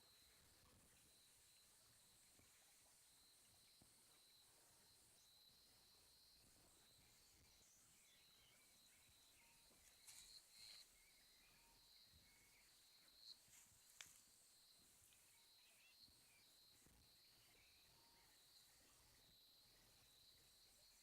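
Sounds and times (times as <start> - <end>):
soft bird chirps: 0.0 - 21.0
high insect drone: 0.1 - 21.0.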